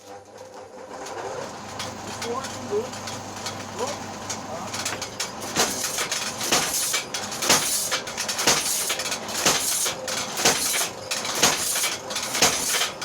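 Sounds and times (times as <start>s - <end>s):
hammer mechanism clatter: 4.3s - 13.0s
power hammer striking: 4.3s - 13.0s.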